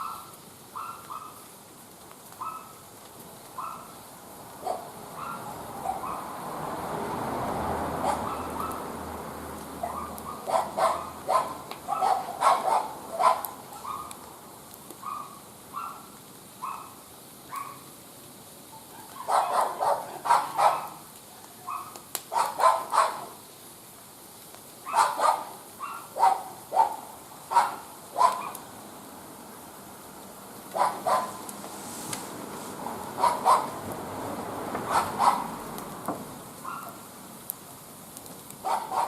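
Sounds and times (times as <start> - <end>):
dog barking: 0.0 - 1.4, 2.4 - 2.8, 3.6 - 3.9, 4.6 - 6.3, 8.0 - 8.8, 9.8 - 14.2, 15.0 - 17.8, 18.7 - 21.0, 21.6 - 23.4, 24.8 - 28.6, 30.7 - 31.4, 33.0 - 33.8, 34.9 - 35.5, 36.6 - 37.0, 38.6 - 39.0
dog yelping: 0.0 - 1.4, 2.4 - 2.8, 3.6 - 3.9, 4.6 - 6.3, 8.0 - 8.8, 9.8 - 14.2, 15.0 - 17.8, 18.7 - 21.0, 21.7 - 23.3, 24.8 - 28.6, 30.7 - 31.4, 33.2 - 33.8, 34.9 - 35.5, 36.6 - 37.0, 38.6 - 39.0.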